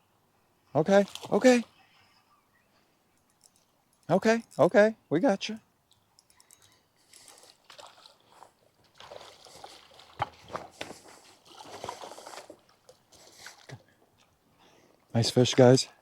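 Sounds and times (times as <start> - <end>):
water sloshing and splashing: 0.9 - 1.8, 5.9 - 14.4.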